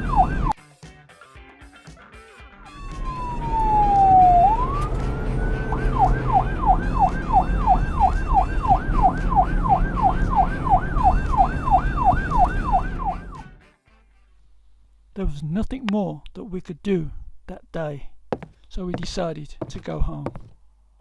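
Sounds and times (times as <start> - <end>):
low engine rumble: 0.0 - 0.5, 2.7 - 13.4
emergency vehicle siren: 0.0 - 0.6, 2.7 - 13.5.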